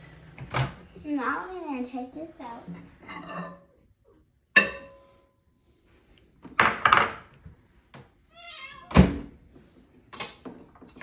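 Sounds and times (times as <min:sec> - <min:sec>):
cat meowing: 0:08.3 - 0:09.0.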